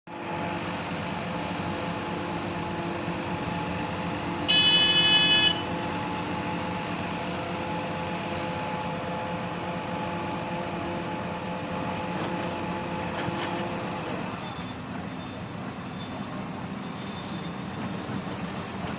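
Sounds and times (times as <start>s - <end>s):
crane engine running: 0.1s - 18.9s
horn sounding: 4.5s - 5.8s.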